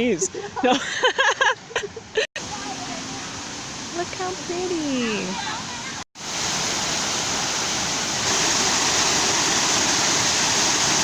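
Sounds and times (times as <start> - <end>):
waterfall rushing: 2.4 - 11.0.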